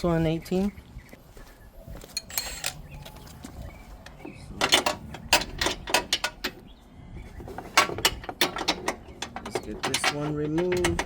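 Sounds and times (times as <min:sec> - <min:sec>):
metal hand tools clinking: 0:02.2 - 0:02.8.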